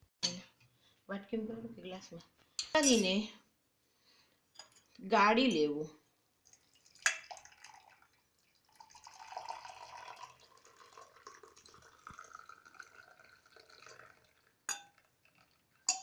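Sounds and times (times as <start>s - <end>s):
liquid trickling into a cup: 6.4s - 16.0s.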